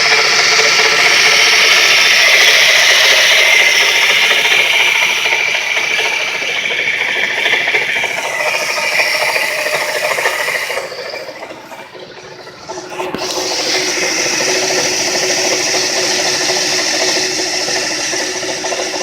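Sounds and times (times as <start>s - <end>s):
engine running: 0.0s - 19.0s
rattling grind of alternator bearings: 0.0s - 19.0s.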